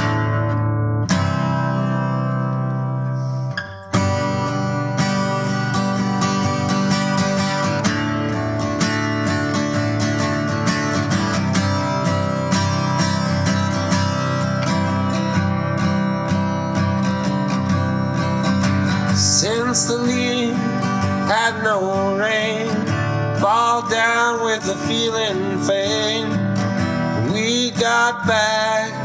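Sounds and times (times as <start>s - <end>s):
strummed acoustic guitar: 0.0s - 29.0s
person singing: 19.1s - 29.0s.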